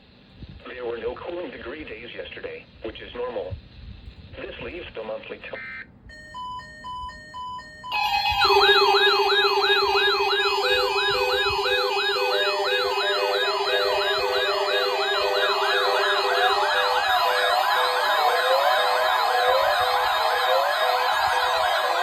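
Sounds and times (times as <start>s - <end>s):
steady low tone: 6.1s - 18.2s
sweeping electronic siren: 6.1s - 22.0s
steady higher tone: 6.2s - 22.0s.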